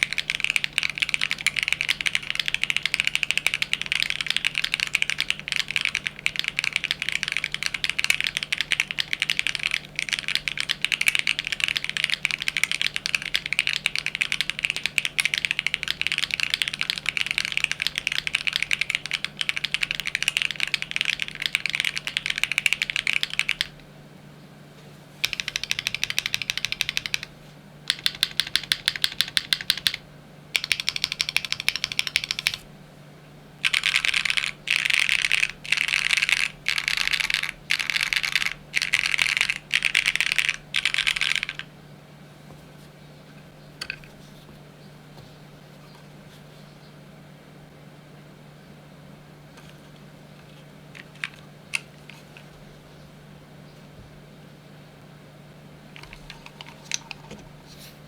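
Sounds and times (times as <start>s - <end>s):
typing on mechanical keyboard: 0.0s - 23.8s, 25.2s - 27.3s, 27.9s - 30.0s, 30.6s - 32.6s, 33.6s - 41.7s, 51.0s - 52.5s, 56.0s - 57.4s.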